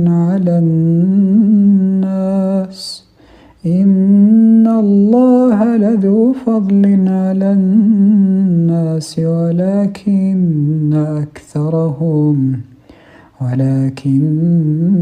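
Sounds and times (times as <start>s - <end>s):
man reciting in melodic chant: 0.0s - 15.0s
short breath: 3.1s - 3.6s, 12.7s - 13.4s.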